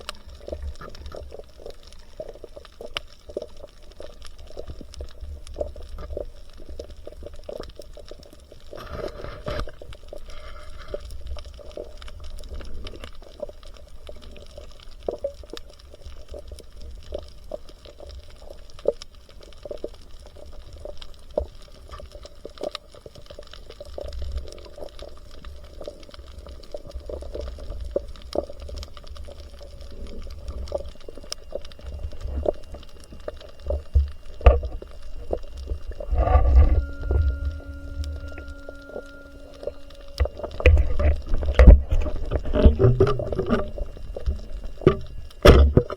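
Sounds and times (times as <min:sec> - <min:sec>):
water sloshing and bubbling: 0:00.0 - 0:45.9
low rumble: 0:33.8 - 0:45.4.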